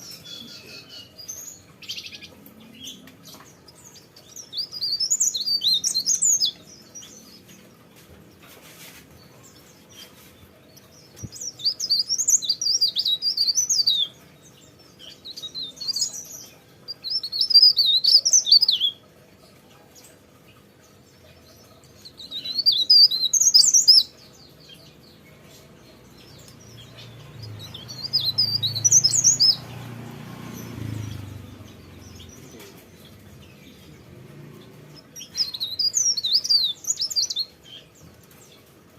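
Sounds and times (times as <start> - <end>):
songbird warbling: 21.7 - 29.7.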